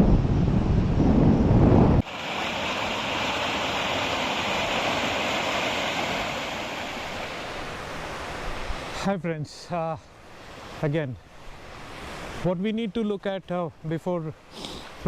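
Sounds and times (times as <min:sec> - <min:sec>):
wind buffeting microphone: 0:00.0 - 0:02.1.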